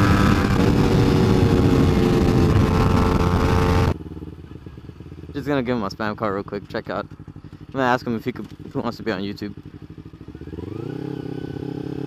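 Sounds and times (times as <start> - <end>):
wind rushing on microphone: 0.0 - 4.0
motorcycle engine at high revs: 0.0 - 5.8, 6.5 - 12.0.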